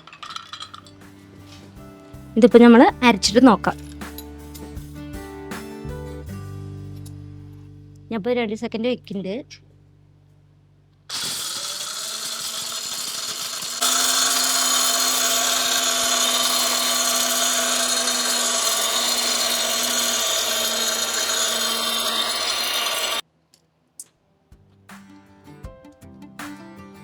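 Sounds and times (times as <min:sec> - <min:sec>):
electric grinder grinding: 0:11.1 - 0:23.2.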